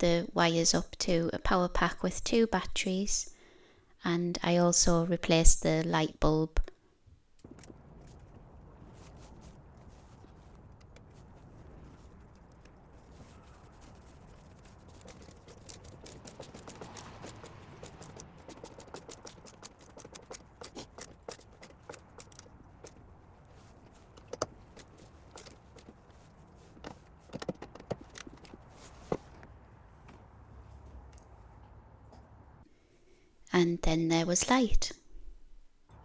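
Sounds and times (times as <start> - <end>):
hands handling small parts: 14.4 - 29.4
sharp clicks: 14.8 - 23.0, 27.3 - 28.7.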